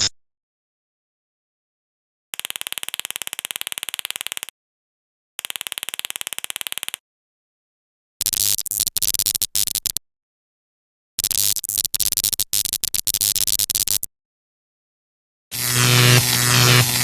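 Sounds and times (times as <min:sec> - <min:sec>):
steady electronic buzzing: 0:15.5 - 0:17.0
electronic laser zapping bursts: 0:15.6 - 0:17.0.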